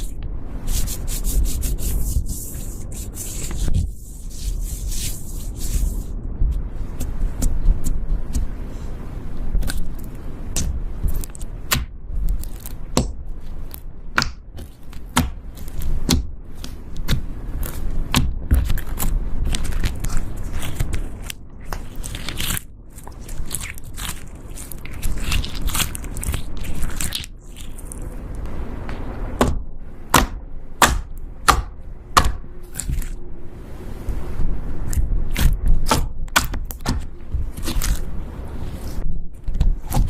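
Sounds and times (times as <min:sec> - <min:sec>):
slime being squeezed: 0:13.6 - 0:28.2, 0:34.8 - 0:38.1.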